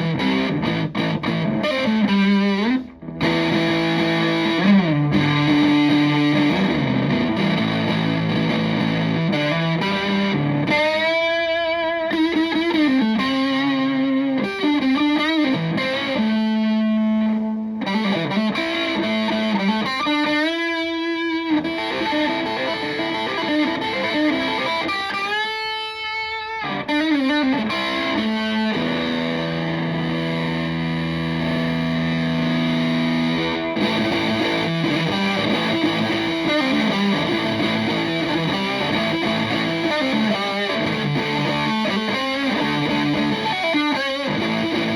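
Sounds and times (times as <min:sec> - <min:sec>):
fuzzy electric guitar lead: 0:00.0 - 0:44.9.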